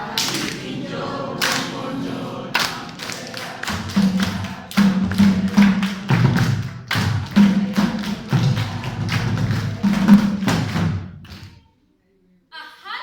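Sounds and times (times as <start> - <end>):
hand claps: 0.0 - 0.8, 1.4 - 1.8, 2.5 - 11.7
group chanting a refrain: 0.0 - 10.8.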